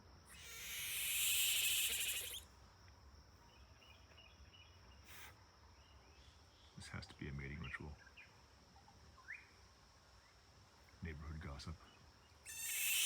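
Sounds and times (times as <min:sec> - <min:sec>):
animal screeching: 0:00.3 - 0:02.4, 0:12.5 - 0:13.0.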